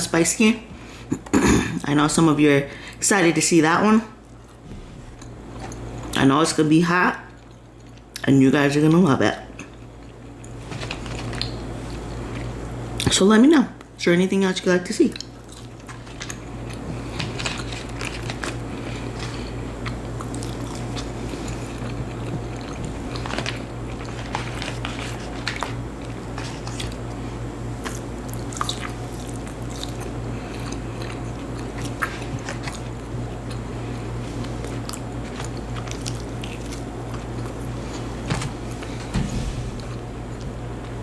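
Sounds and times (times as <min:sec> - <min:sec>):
steady low hum: 0:00.0 - 0:13.0, 0:15.3 - 0:41.0
person chewing and crunching: 0:15.1 - 0:27.1, 0:27.8 - 0:33.7, 0:34.3 - 0:37.7.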